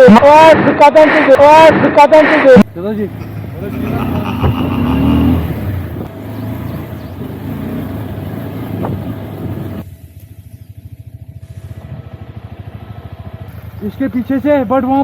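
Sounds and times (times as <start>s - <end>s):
motorcycle engine idling: 2.7s - 15.0s.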